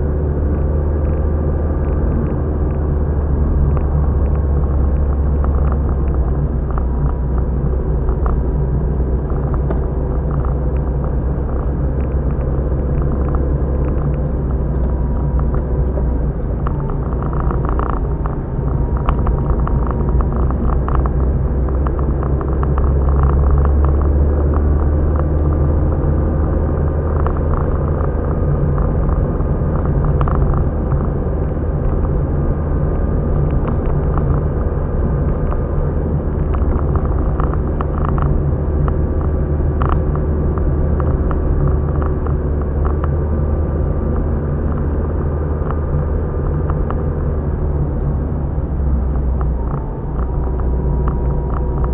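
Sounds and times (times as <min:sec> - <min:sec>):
car engine and road noise: 0:00.0 - 0:51.9.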